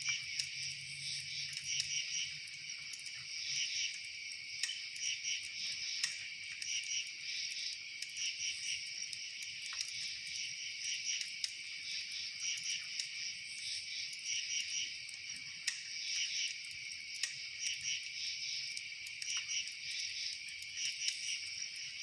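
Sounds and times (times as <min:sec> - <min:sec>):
crickets chirping: 0:00.0 - 0:22.0
faint sharp clicks: 0:03.9 - 0:06.7, 0:08.9 - 0:10.2, 0:11.1 - 0:11.6, 0:15.0 - 0:21.9.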